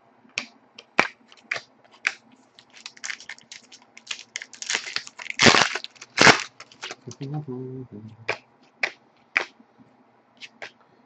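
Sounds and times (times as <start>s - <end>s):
cards clicking and swishing: 0.4s - 7.2s, 10.4s - 10.8s.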